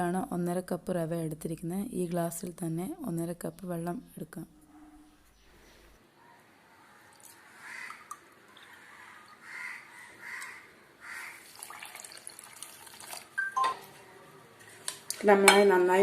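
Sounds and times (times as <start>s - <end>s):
water pouring into glass: 11.4s - 13.6s.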